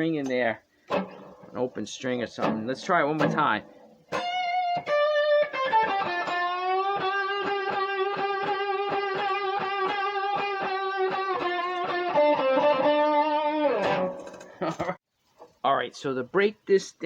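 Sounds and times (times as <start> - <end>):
electric guitar blues lick: 0.9 - 1.5, 2.4 - 14.5.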